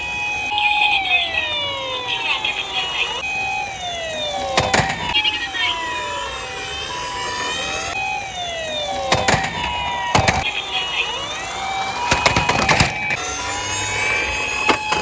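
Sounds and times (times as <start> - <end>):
hi-lo two-tone siren: 0.0 - 15.0
wailing siren: 0.0 - 15.0
toy car plastic clacks: 4.6 - 5.2, 9.0 - 15.0.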